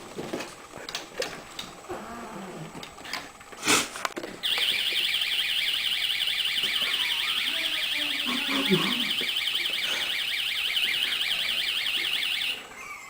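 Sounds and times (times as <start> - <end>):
door alarm warbling: 4.4 - 12.8.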